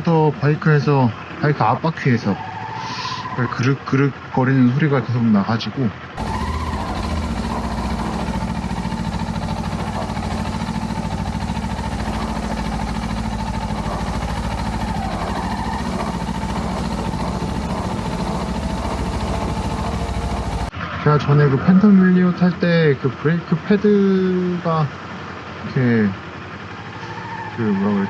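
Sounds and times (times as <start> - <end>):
motorcycle engine running: 6.2 - 20.7.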